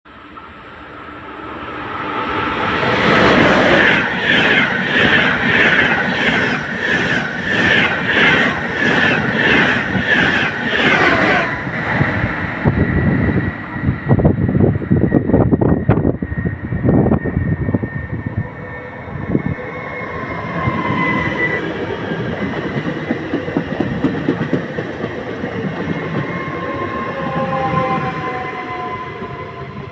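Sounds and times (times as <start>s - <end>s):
train wheels clickety-clack: 2.8s - 11.6s, 20.6s - 28.4s
high squealing tones: 3.2s - 12.0s.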